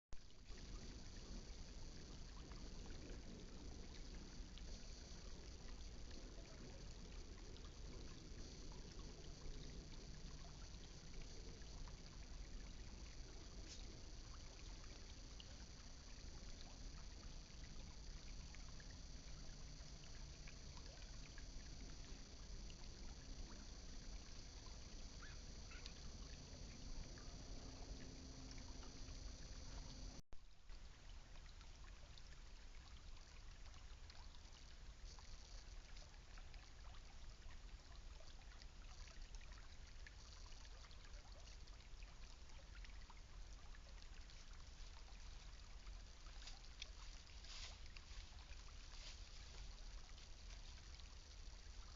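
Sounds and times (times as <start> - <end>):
trickling creek water: 0.2 - 51.9.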